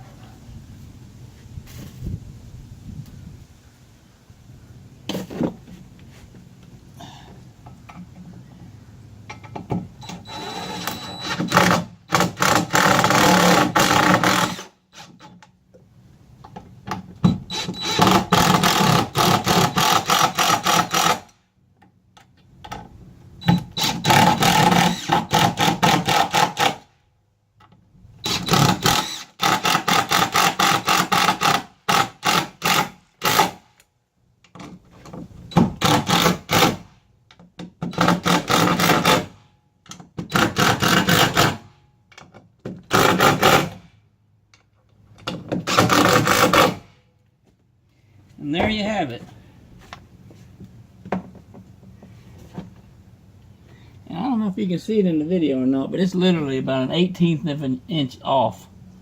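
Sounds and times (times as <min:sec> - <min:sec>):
power drill running: 0:10.1 - 0:14.7, 0:17.5 - 0:21.2, 0:28.2 - 0:32.8.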